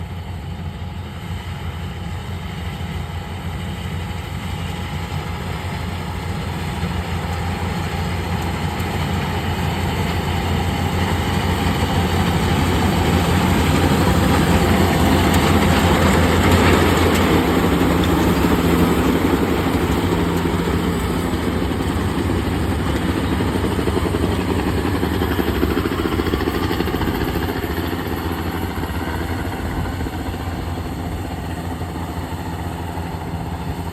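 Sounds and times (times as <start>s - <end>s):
combine harvester engine hum: 0.0s - 33.9s
threshing machinery noise: 5.2s - 33.9s.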